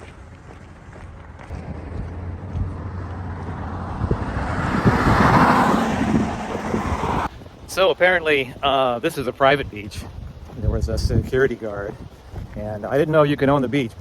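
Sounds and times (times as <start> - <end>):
car driving past: 1.5 - 7.3.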